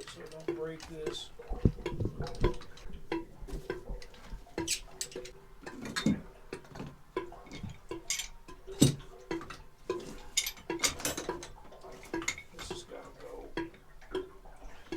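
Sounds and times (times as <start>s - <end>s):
hand tools knocking on pipe fittings: 0.0s - 12.9s.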